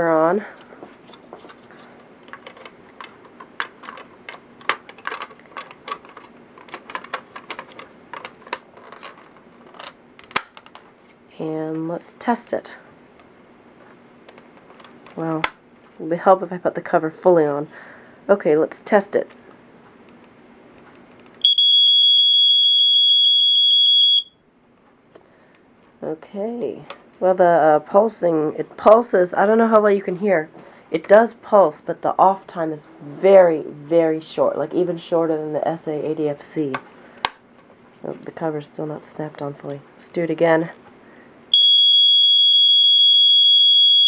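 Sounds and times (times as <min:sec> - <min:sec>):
smoke alarm pulsing tone: 0:21.4 - 0:24.4, 0:41.5 - 0:44.0.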